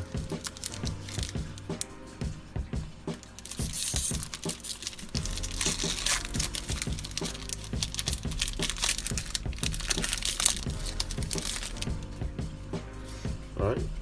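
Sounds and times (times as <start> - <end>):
plastic wrapper tearing and crackling: 0.0 - 1.9, 3.1 - 12.2
quiet background music: 0.0 - 14.0.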